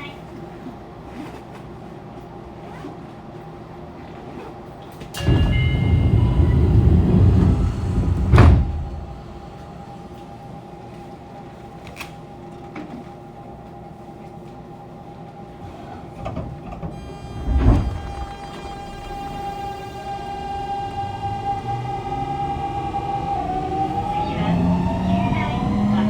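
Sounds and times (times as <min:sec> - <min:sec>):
train doors sliding shut: 0:05.0 - 0:10.4, 0:15.7 - 0:26.0
stopped train humming: 0:05.1 - 0:11.6, 0:16.5 - 0:26.0
train inverter whine: 0:05.1 - 0:12.4, 0:16.1 - 0:26.0
line breaker clunk: 0:05.2 - 0:10.0, 0:16.3 - 0:24.2.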